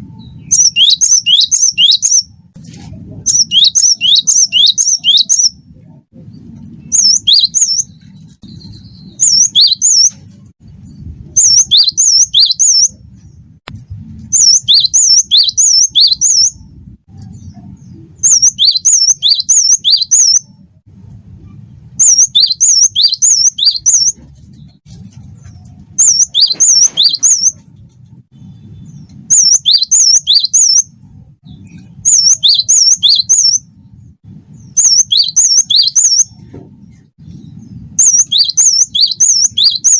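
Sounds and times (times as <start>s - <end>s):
faint low hum: 0.0s - 39.9s
bird whistling song: 0.1s - 2.3s, 3.3s - 5.6s, 6.8s - 10.2s, 10.9s - 13.0s, 14.3s - 20.5s, 22.0s - 24.7s, 26.0s - 27.6s, 28.4s - 33.7s, 34.5s - 36.4s, 37.2s - 39.9s.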